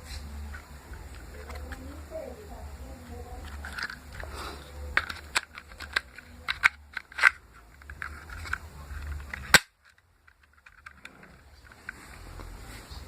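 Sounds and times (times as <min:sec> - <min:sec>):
toy pistol firing crack: 0:09.4 - 0:09.8.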